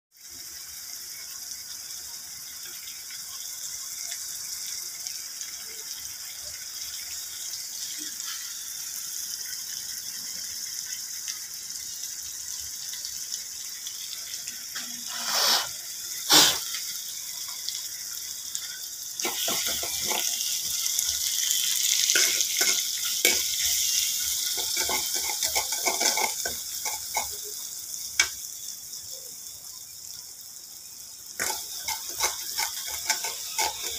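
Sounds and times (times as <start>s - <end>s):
tap water running into sink: 19.2s - 21.2s.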